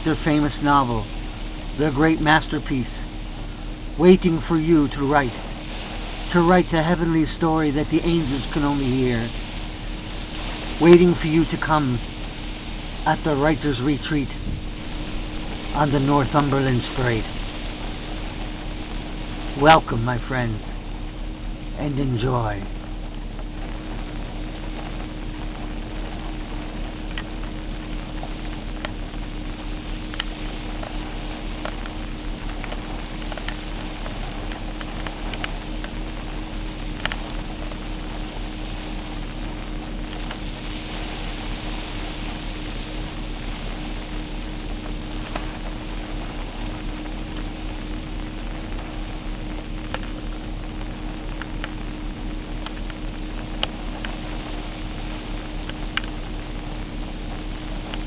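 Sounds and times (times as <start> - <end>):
constant low hum: 0.0 - 58.0
hurricane wind rushing: 0.0 - 58.0.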